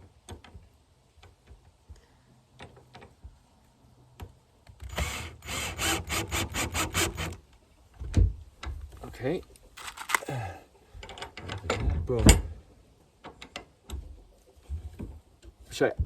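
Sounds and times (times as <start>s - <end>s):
screw rasping into wood: 4.9s - 7.4s.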